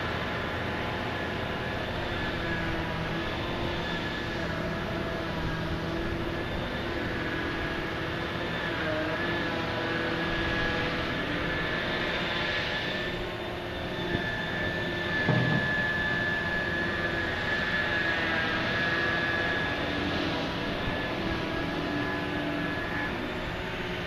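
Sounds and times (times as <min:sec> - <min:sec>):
heavy machinery engine and hydraulics: 0:00.0 - 0:24.0
dull thump: 0:15.2 - 0:15.8.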